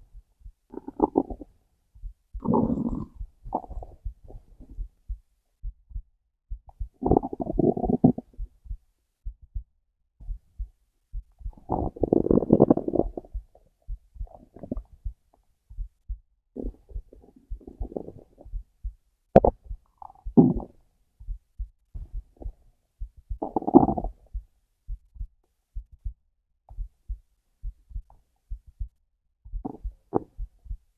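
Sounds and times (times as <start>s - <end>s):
low heartbeat thumps: 0.0s - 30.9s
stomach growling: 0.7s - 1.5s, 2.4s - 4.4s, 7.0s - 8.3s, 11.6s - 13.4s, 14.3s - 14.9s, 16.6s - 18.5s, 19.4s - 20.7s, 23.4s - 24.2s, 29.6s - 30.4s.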